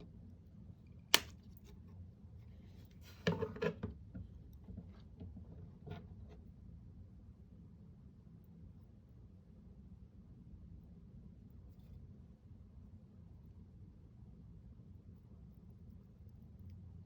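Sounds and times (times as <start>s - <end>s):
sharp click: 1.1s - 1.4s.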